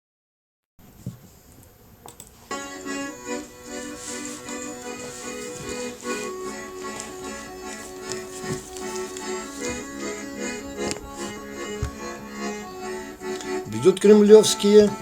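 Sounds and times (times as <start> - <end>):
faint clicks: 1.0 - 2.5
accordion music: 2.4 - 15.0.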